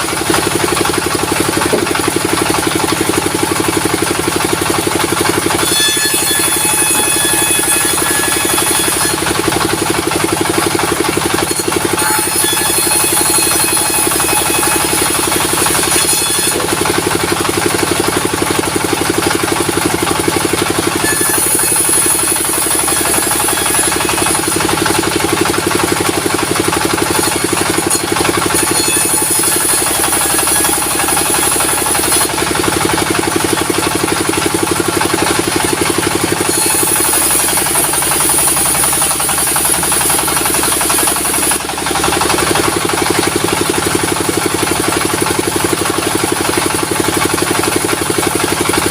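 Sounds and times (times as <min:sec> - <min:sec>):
saw cutting through log: 0:00.0 - 0:48.9
sawmill running: 0:00.0 - 0:48.9.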